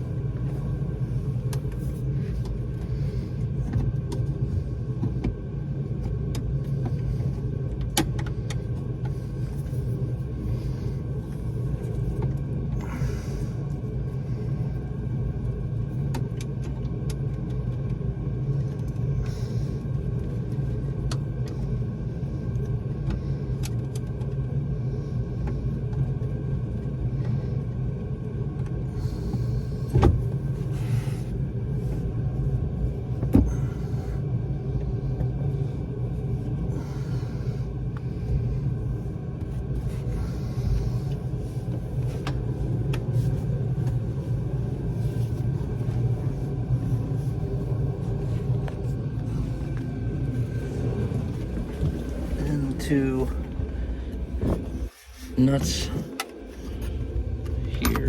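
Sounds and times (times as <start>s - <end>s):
low mechanical hum: 0.0s - 58.0s.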